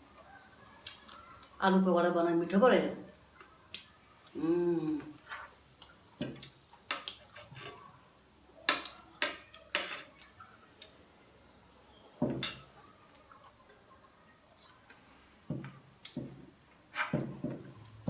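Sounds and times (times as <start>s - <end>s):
cutlery clinking on a plate: 8.7s - 10.2s, 12.2s - 12.7s.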